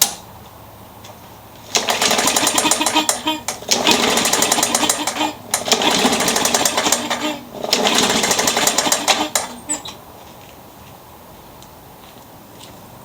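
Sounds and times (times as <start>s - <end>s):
lawnmower engine knocking: 1.7s - 10.0s.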